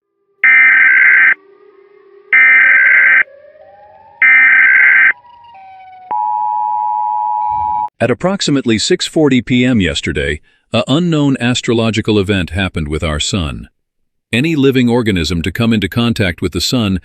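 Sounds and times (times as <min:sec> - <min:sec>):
harsh digital data bursts: 0:00.4 - 0:01.4, 0:02.3 - 0:03.3
two-tone attention signal: 0:00.4 - 0:07.9.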